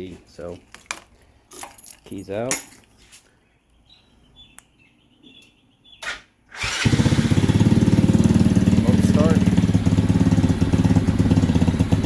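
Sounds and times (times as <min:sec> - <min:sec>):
motorcycle engine cranking: 0:06.5 - 0:12.0
motorcycle engine idling: 0:06.6 - 0:12.0.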